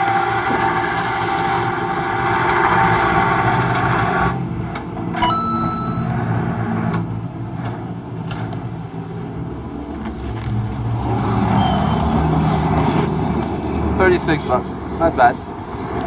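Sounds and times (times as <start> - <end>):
short high tone: 5.2 - 6.6.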